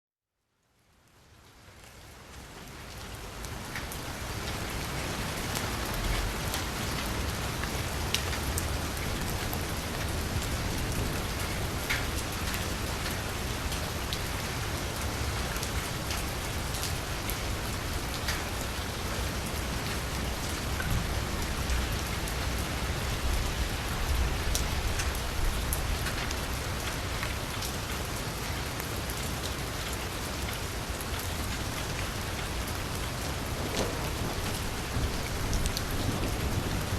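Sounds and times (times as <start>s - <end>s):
rain falling on a street: 0.4s - 36.9s
raindrops ticking: 31.5s - 36.6s.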